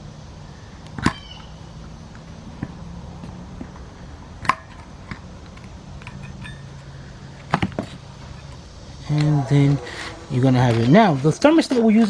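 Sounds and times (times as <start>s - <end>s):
steady low hum: 0.0s - 12.0s
screwdriver clicking on metal: 5.5s - 8.8s.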